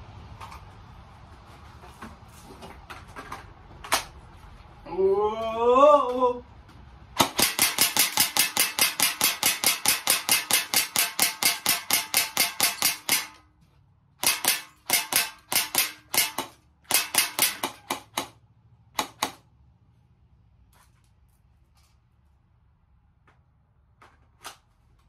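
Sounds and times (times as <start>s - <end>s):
airsoft rifle shots: 7.2s - 13.4s, 14.2s - 18.4s.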